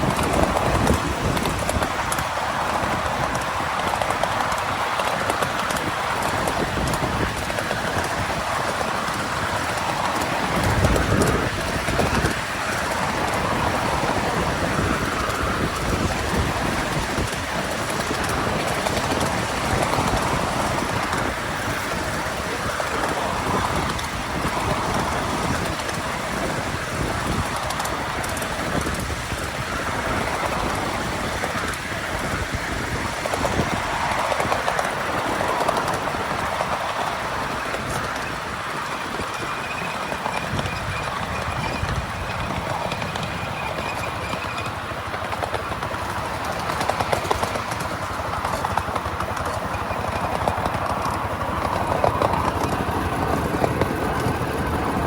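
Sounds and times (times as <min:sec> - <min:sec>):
miniature train rumbling: 0:00.0 - 0:55.0
wheels clattering on rails: 0:00.0 - 0:55.0.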